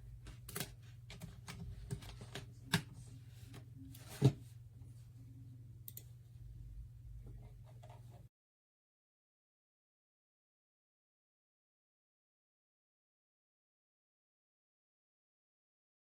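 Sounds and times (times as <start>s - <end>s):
low steady hum: 0.0s - 8.3s.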